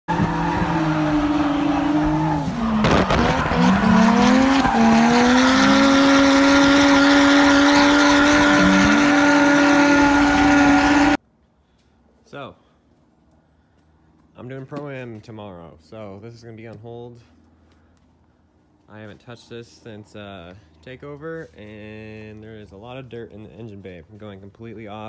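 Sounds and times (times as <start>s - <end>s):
car engine revving: 0.1s - 11.2s
tyres squealing: 0.1s - 11.2s.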